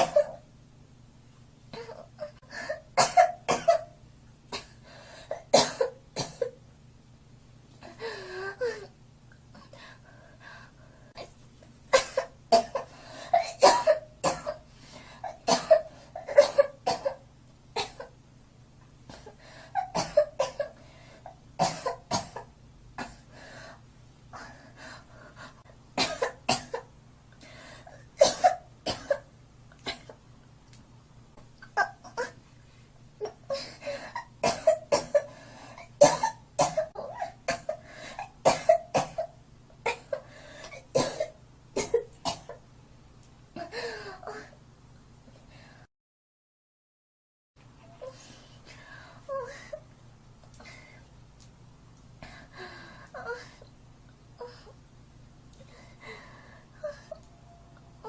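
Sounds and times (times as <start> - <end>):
girl coughing: 0.0 - 0.4, 3.0 - 3.9, 5.4 - 6.6, 12.0 - 14.6, 15.3 - 17.2, 19.8 - 20.8, 21.6 - 23.2, 26.0 - 26.9, 28.2 - 29.3, 34.1 - 35.3, 36.0 - 39.3, 41.0 - 42.6.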